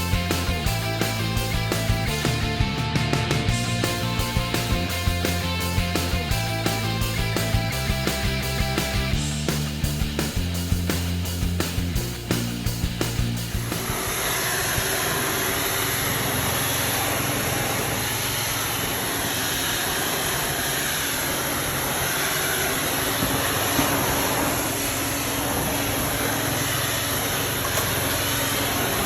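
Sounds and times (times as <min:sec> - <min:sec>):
carpet cleaner vacuum and spray: 0:13.8 - 0:29.0.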